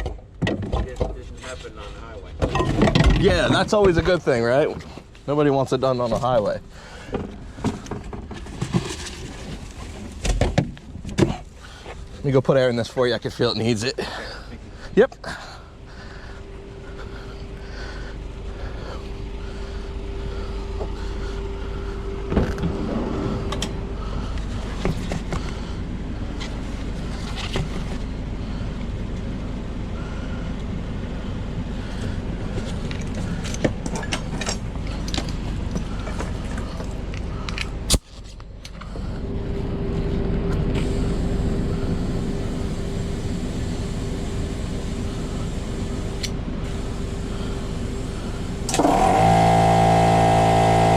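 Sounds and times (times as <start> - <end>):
air compressor humming: 40.7 - 50.9.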